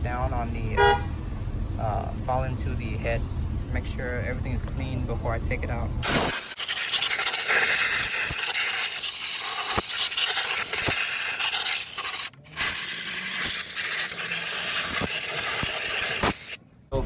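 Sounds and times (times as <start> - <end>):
compressed air hissing: 6.0 - 16.6.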